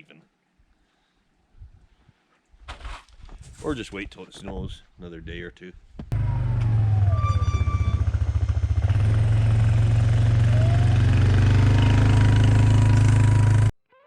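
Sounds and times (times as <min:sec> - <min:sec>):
diesel engine running: 0:06.2 - 0:13.7.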